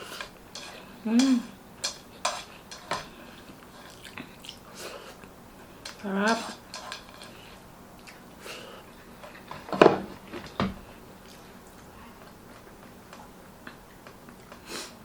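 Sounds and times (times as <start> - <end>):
mouth eating noises: 0.0 - 8.6
cutlery clicking on plate: 0.2 - 3.1.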